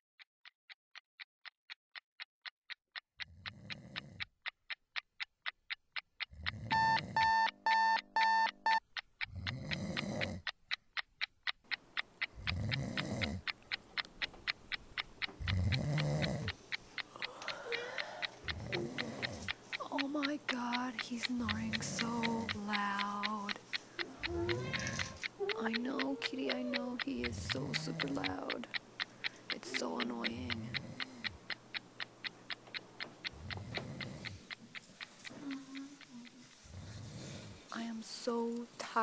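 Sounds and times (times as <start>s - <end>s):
lower beeping pattern: 6.7s - 8.8s
alarm clock beeping rapidly: 6.7s - 8.9s, 17.7s - 35.1s
man snoring loudly: 12.5s - 13.4s, 15.5s - 16.5s.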